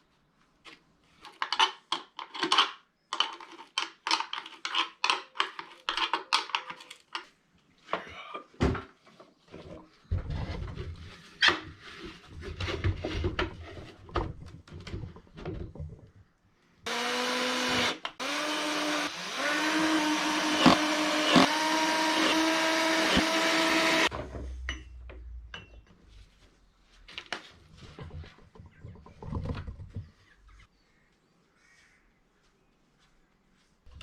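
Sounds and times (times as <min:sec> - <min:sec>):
lathe motor humming: 0:16.9 - 0:24.1.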